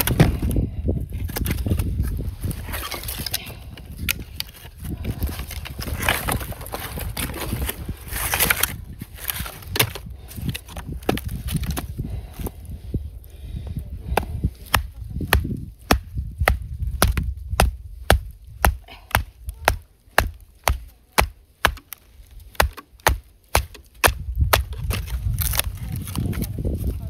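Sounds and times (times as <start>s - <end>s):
low rumble of wind: 0.0s - 27.0s
sharp chopping strikes: 14.2s - 25.7s.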